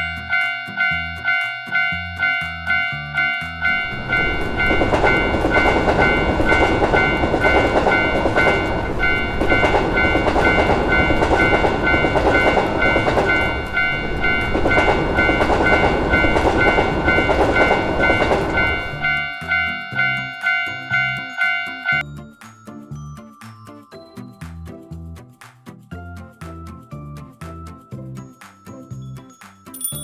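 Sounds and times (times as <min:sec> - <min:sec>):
railroad crossing bell ringing: 0:00.0 - 0:22.4, 0:29.0 - 0:30.0
train rumbling past: 0:03.1 - 0:20.2.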